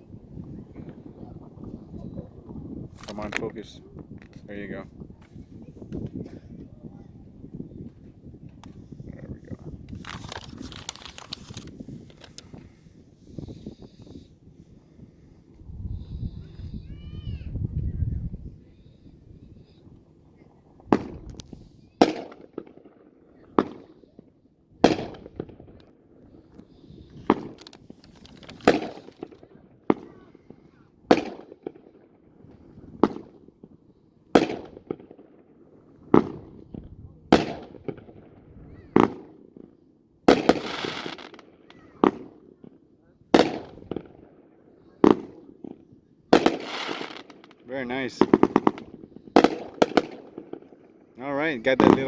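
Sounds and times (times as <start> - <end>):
fireworks bangs: 20.6 - 52.0
crackling hiss: 26.6 - 29.4, 46.3 - 50.3.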